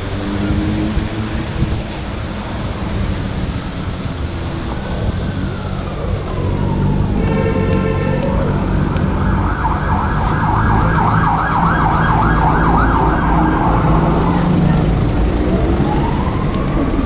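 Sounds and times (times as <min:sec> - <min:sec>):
low rumble of traffic: 0:00.0 - 0:17.0
emergency vehicle siren yelping: 0:04.2 - 0:17.0.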